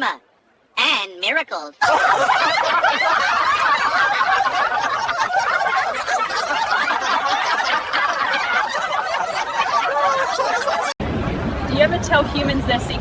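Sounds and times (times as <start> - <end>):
chorus of high-pitched laughter: 1.8 - 11.0.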